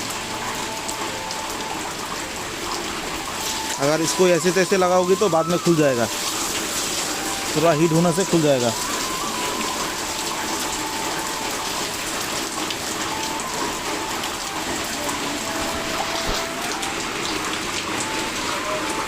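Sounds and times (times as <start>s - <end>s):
heavy rain: 0.0s - 19.0s.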